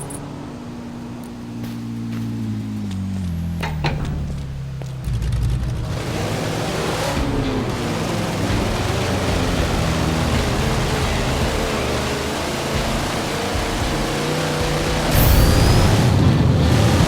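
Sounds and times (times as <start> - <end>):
engine humming: 0.0 - 17.0
loud rushing noise: 14.9 - 17.0.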